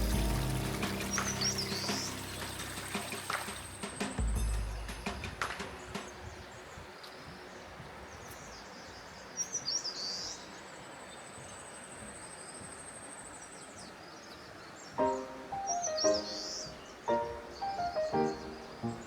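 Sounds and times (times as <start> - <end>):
mountain stream and waterfall: 0.0 - 4.3
songbird chirping: 0.0 - 19.0.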